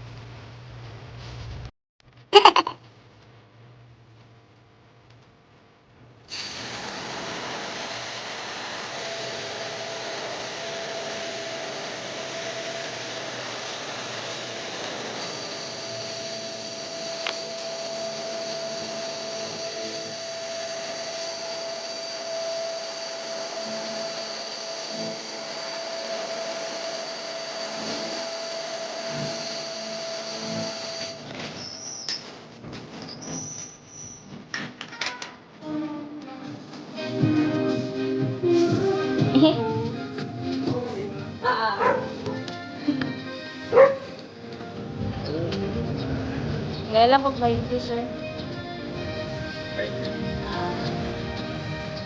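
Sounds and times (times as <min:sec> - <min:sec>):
faint motor whine: 0:03.0 - 0:31.8
appliance motor rushing air: 0:06.3 - 0:31.7.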